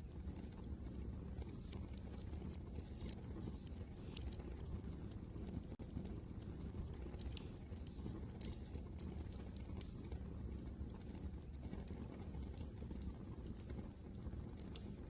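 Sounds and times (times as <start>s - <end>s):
wood fire crackling: 0.0s - 15.0s.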